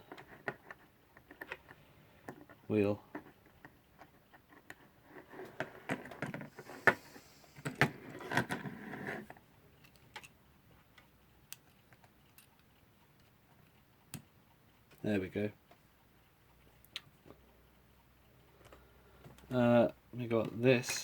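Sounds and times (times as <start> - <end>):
small metal parts clicking and rattling: 9.8 - 10.4, 11.0 - 13.8.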